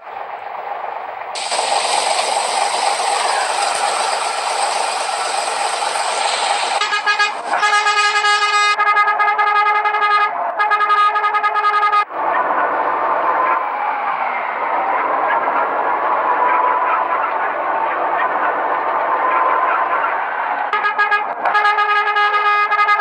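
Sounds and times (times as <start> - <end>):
vehicle noise rushing: 0.0 - 23.0
musical air horn blasts: 6.4 - 12.1, 20.7 - 23.0.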